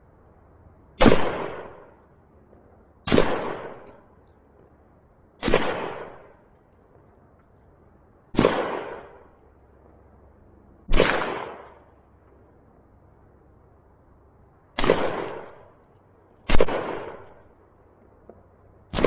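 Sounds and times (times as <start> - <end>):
gunshots: 1.0 - 1.9, 3.1 - 3.9, 5.4 - 6.4, 8.4 - 9.3, 10.9 - 11.8, 14.8 - 15.6, 16.5 - 17.4.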